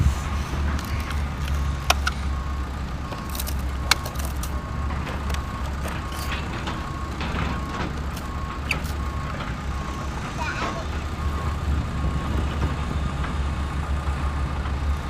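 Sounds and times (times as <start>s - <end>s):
low rumble: 0.0s - 8.4s
sharp clicks: 0.7s - 2.5s
reversing beeper beeps: 0.9s - 12.5s.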